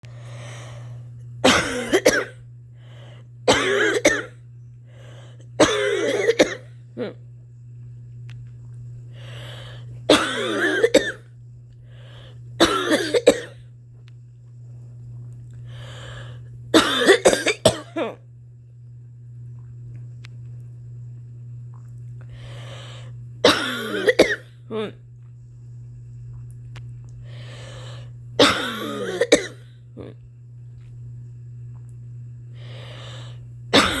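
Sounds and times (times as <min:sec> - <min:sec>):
noisy breaths: 0:00.0 - 0:01.2, 0:02.7 - 0:03.4, 0:04.9 - 0:05.5, 0:09.1 - 0:10.0, 0:11.7 - 0:12.6, 0:15.6 - 0:16.6, 0:22.2 - 0:23.2, 0:27.2 - 0:28.2, 0:32.5 - 0:33.6
steady low hum: 0:00.0 - 0:34.0
woman coughing harshly: 0:01.4 - 0:02.4, 0:03.5 - 0:04.4, 0:05.6 - 0:07.2, 0:10.1 - 0:11.2, 0:12.6 - 0:13.6, 0:16.8 - 0:18.2, 0:23.4 - 0:25.0, 0:28.4 - 0:30.2, 0:33.7 - 0:34.0.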